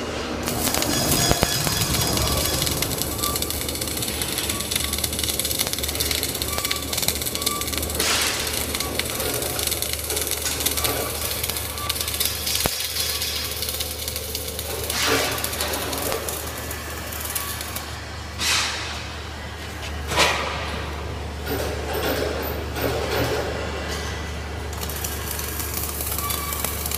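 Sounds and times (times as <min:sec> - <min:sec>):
low electrical hum: 0:00.0 - 0:23.0
welding arc crackling: 0:00.4 - 0:18.7, 0:24.6 - 0:26.9.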